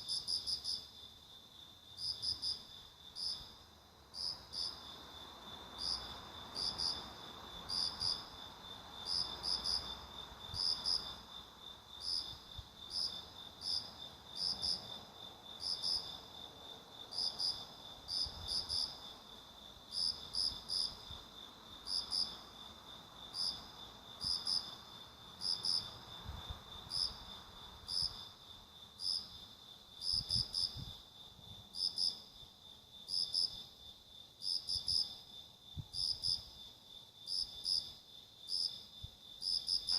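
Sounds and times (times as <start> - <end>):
high insect chirps: 17.1 - 39.9.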